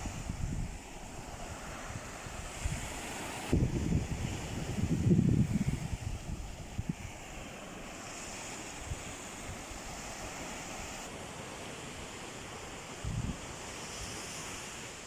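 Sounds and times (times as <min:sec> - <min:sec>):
wind buffeting microphone: 0:00.0 - 0:10.4, 0:12.9 - 0:14.2
sea surf washing on shore: 0:00.0 - 0:15.0.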